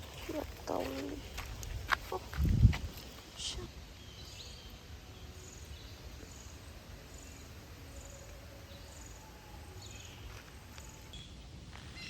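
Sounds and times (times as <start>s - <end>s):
insect chirping: 0.0s - 11.4s.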